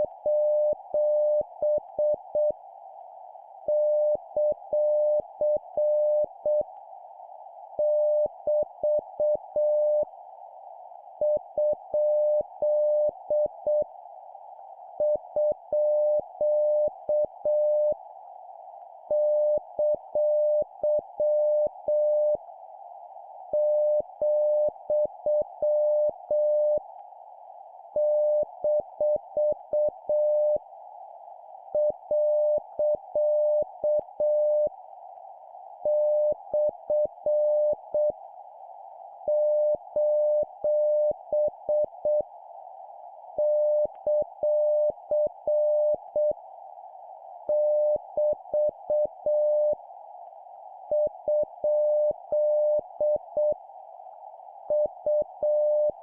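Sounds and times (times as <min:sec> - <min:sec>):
morse code beeps: 0:54.7 - 0:55.9.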